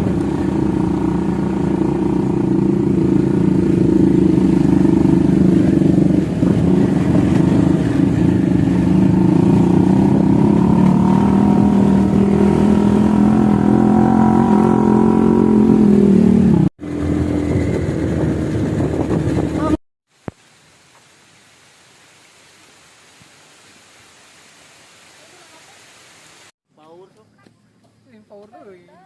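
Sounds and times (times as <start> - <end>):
motorcycle engine running: 0.0 - 19.8.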